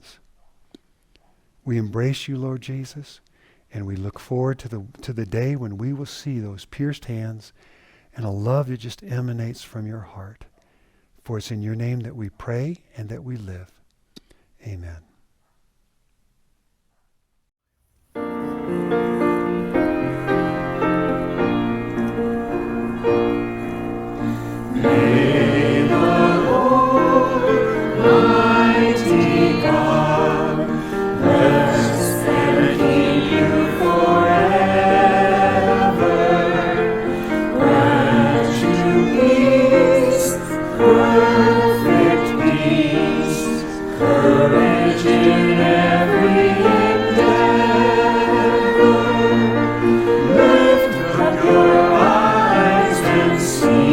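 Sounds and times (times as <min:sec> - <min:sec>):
piano: 0:18.0 - 0:53.9
choir singing a hymn: 0:18.2 - 0:53.9.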